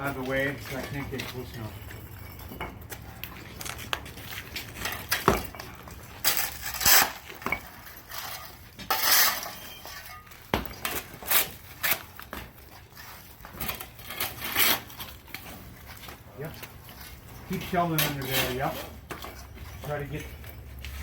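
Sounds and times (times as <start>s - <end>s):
metal shovel scraping through debris: 4.6s - 21.0s.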